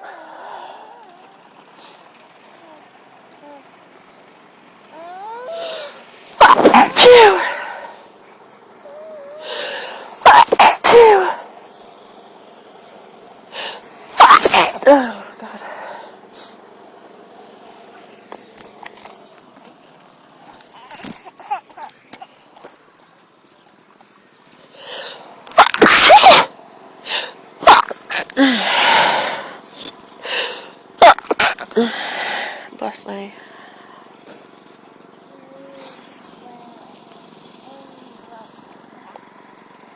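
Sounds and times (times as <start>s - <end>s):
woman sneezing: 5.2s - 8.0s, 9.4s - 11.5s, 13.6s - 16.0s, 24.9s - 26.5s, 27.1s - 32.2s
woman inhaling: 9.4s - 10.2s, 13.5s - 13.9s, 28.4s - 30.8s
short breath in: 28.4s - 30.8s.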